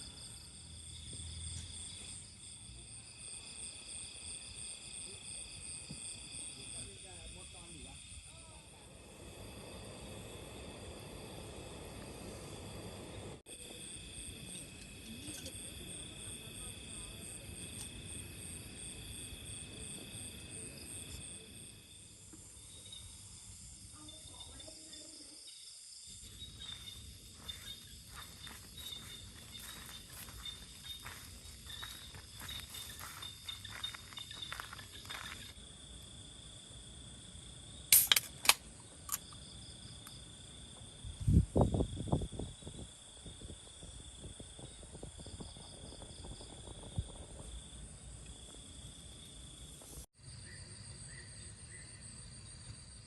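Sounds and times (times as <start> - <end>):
insects chirring: 0.0 - 53.0
low rumbling noise: 8.6 - 13.5.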